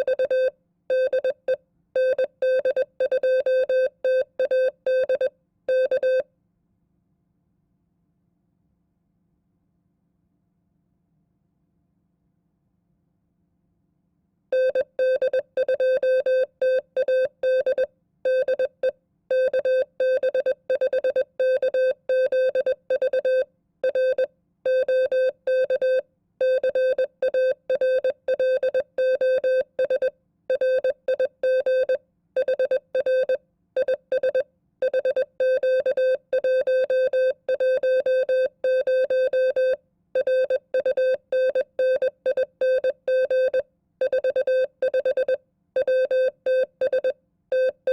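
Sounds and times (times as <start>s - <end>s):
morse code tone: 0.0s - 6.2s, 14.6s - 47.9s.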